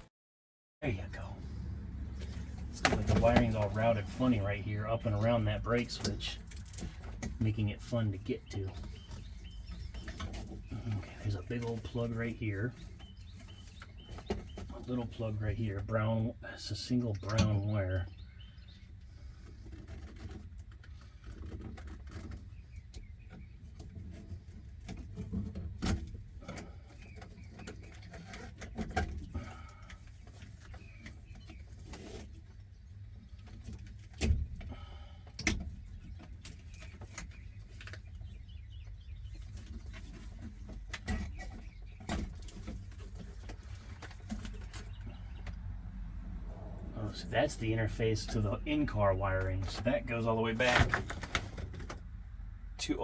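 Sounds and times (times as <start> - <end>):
wiring plugs clicking and rustling: 2.2 - 15.0.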